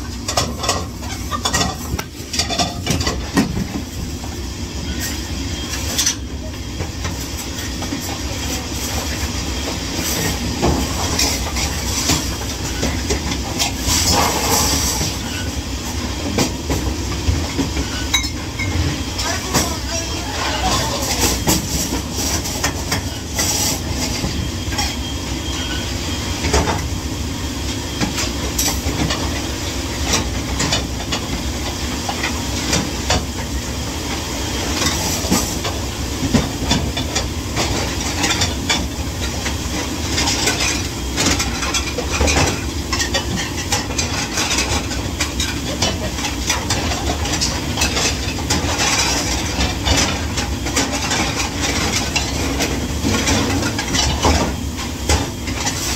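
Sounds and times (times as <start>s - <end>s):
dishes and utensils clattering: 0.2s - 3.6s, 17.6s - 25.0s, 40.1s - 55.9s.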